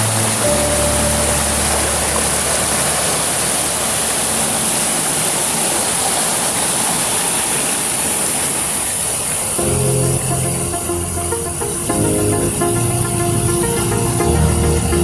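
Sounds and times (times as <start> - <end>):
faint background music: 0.0 - 4.4, 9.6 - 15.0
waterfall rushing: 0.0 - 15.0.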